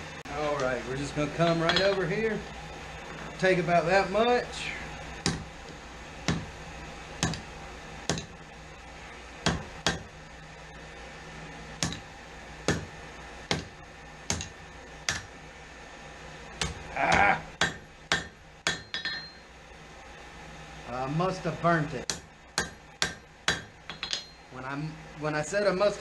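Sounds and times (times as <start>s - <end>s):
steady low hum: 0.0s - 26.0s
hammer striking steel on anvil: 8.1s - 8.3s, 9.4s - 10.1s, 16.6s - 19.5s, 22.1s - 24.5s.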